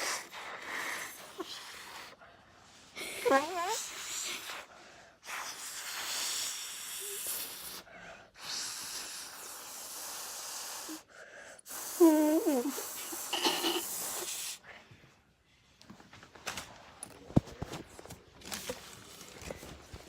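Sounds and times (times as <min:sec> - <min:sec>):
air hissing into whoopee cushion: 0:03.4 - 0:14.6.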